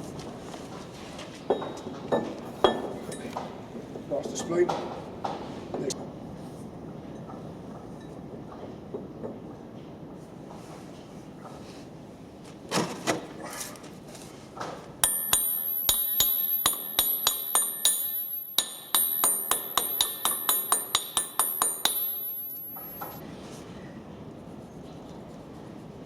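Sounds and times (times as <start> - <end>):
dull knocks of handled metal: 1.5 - 5.4, 14.6 - 23.2
hammer striking steel: 15.0 - 23.2.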